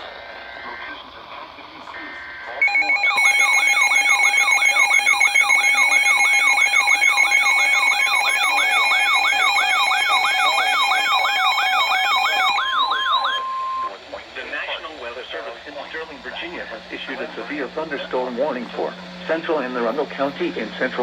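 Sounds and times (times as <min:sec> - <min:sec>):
electronic siren sweeping up: 0:02.6 - 0:13.9
pulsing beeps: 0:02.6 - 0:13.9
steady alert tone: 0:02.6 - 0:13.9.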